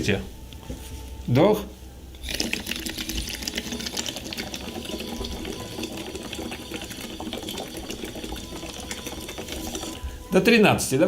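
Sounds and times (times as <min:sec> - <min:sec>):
rapid bubbling through water: 0:02.2 - 0:10.1.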